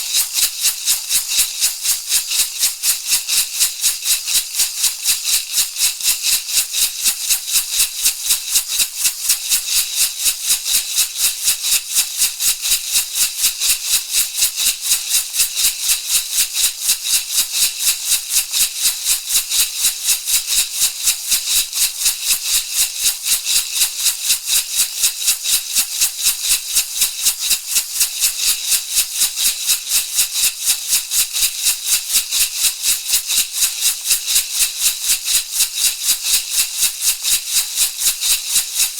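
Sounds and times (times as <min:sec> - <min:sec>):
rattle shaken rhythmically: 0:00.0 - 0:38.9.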